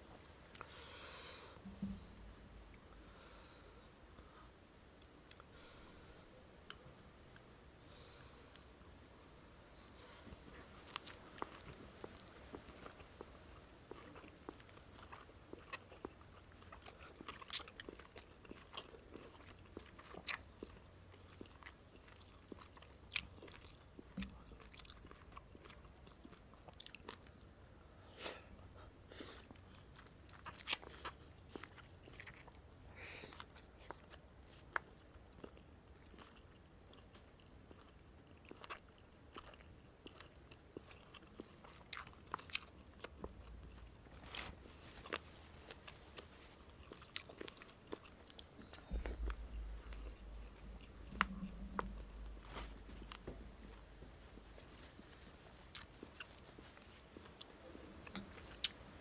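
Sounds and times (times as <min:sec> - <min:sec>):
person chewing and biting: 0:10.8 - 0:27.4, 0:29.2 - 0:32.6, 0:33.3 - 0:58.8.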